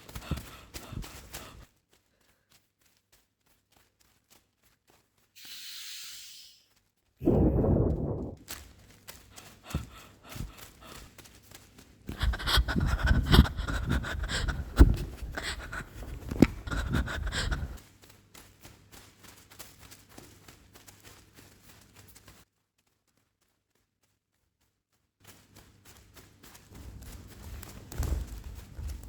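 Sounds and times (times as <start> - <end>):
panting breath: 0.0 - 1.7, 9.2 - 11.2, 12.1 - 17.8
hurried footsteps: 0.0 - 5.4, 7.2 - 22.4, 25.2 - 29.0.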